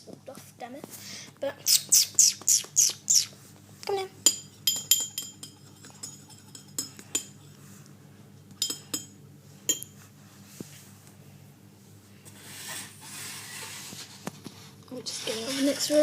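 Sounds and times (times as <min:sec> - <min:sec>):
dishes clinking: 0:04.2 - 0:07.5, 0:08.6 - 0:10.0.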